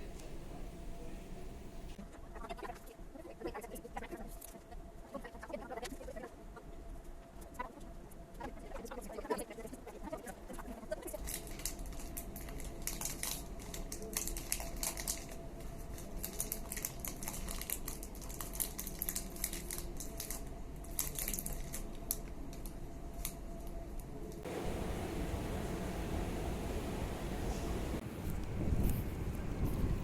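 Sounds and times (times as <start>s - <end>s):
light clicks and crinkling: 11.1s - 24.4s
low steady hum: 22.9s - 30.0s.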